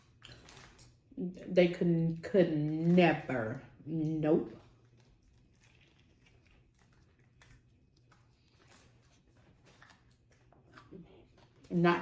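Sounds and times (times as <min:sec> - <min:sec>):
person chewing sandwich: 0:00.0 - 0:01.1, 0:04.6 - 0:11.7.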